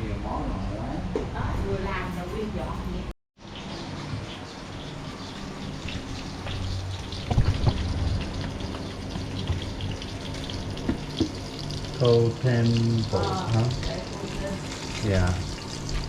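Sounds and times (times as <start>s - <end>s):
fish frying in hot oil: 3.4s - 16.0s
utensil knocks: 10.8s - 11.4s.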